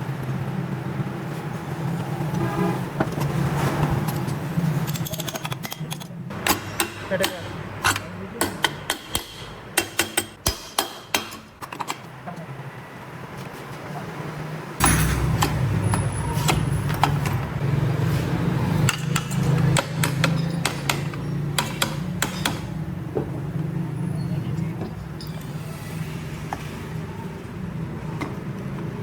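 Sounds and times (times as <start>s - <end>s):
sharp metal taps and knocks: 4.1s - 12.1s, 14.8s - 17.5s, 18.8s - 23.3s
motorcycle engine starting and running: 14.8s - 23.9s.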